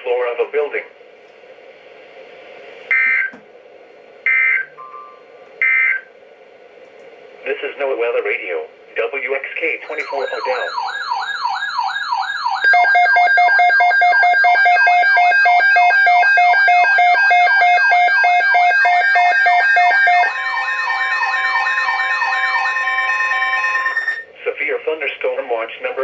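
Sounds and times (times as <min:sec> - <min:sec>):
electronic siren warbling: 0:02.9 - 0:03.4, 0:04.3 - 0:06.1, 0:09.8 - 0:24.3
rapidly pulsing beep: 0:09.8 - 0:24.2.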